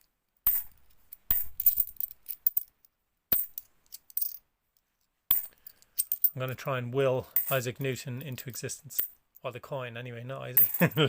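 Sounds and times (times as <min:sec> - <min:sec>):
coins clinking: 0:00.5 - 0:02.7, 0:03.3 - 0:04.4, 0:05.3 - 0:06.4, 0:10.6 - 0:11.0.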